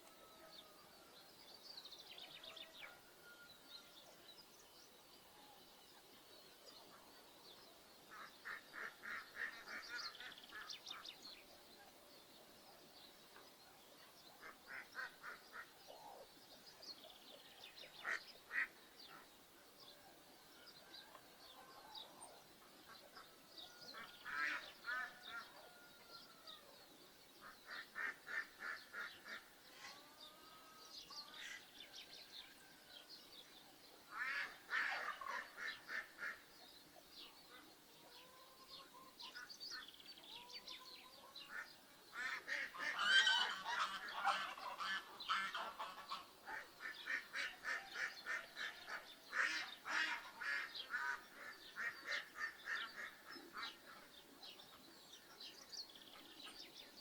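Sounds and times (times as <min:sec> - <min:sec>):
ducks quacking: 0:08.1 - 0:10.7, 0:27.4 - 0:30.0, 0:41.5 - 0:53.9
geese honking: 0:42.2 - 0:46.3.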